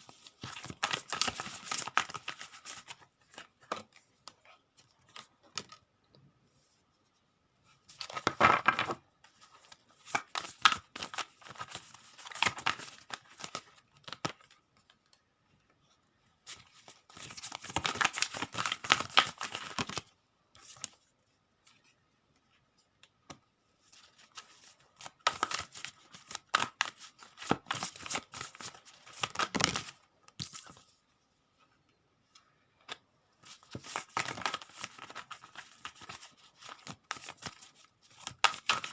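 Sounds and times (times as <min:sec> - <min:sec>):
cards being shuffled: 0:00.1 - 0:04.4, 0:07.9 - 0:14.6, 0:16.5 - 0:21.0, 0:24.1 - 0:30.8, 0:33.4 - 0:38.9.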